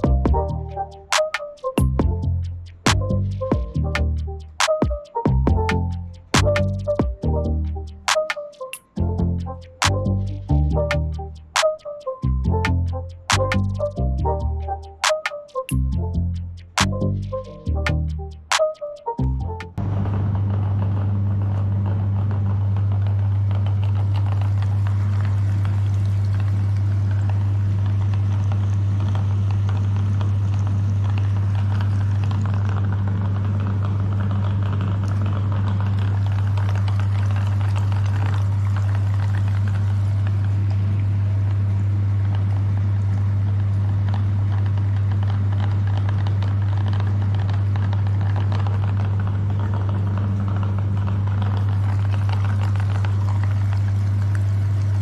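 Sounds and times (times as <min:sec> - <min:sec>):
electric meat grinder running: 0:43.5 - 0:55.0.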